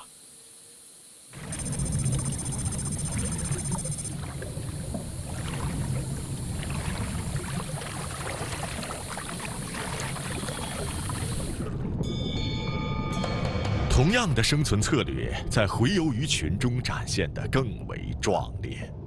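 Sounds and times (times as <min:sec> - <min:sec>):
water rushing and splashing: 0:01.3 - 0:12.1.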